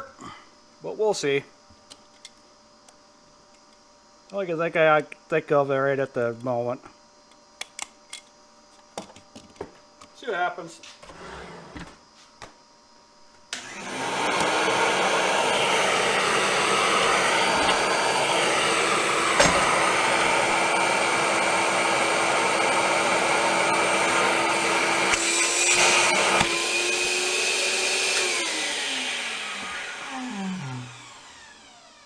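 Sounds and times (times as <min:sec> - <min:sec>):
power tool motor whining: 0:13.5 - 0:32.0.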